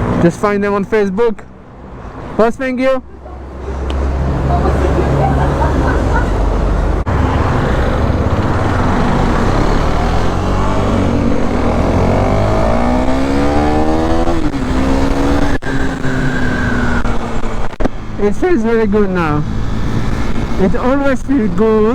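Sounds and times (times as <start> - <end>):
motorcycle engine accelerating: 4.4 - 18.3, 19.4 - 20.8.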